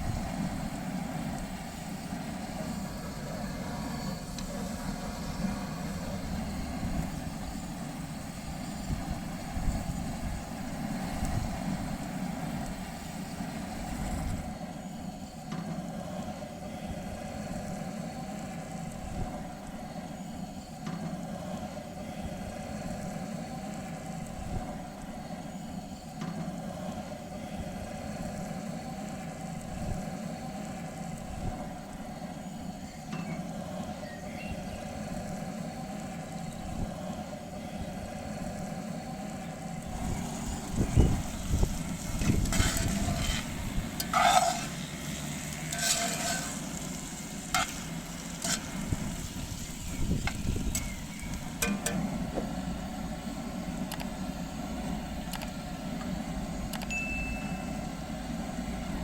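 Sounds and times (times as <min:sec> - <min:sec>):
food sizzling in a pan: 0:40.2 - 0:49.9
utensil stirring against pan: 0:40.2 - 0:50.4.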